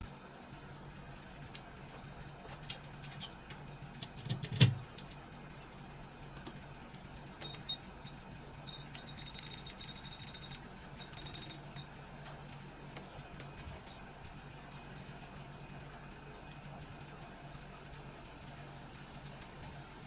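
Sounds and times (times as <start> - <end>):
low electrical hum: 0.0 - 20.0
faint high whine: 7.4 - 12.3.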